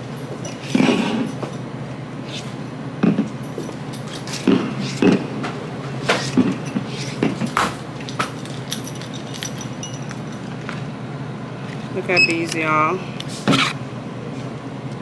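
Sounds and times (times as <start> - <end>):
hard objects knocking and clinking: 3.0 - 10.9.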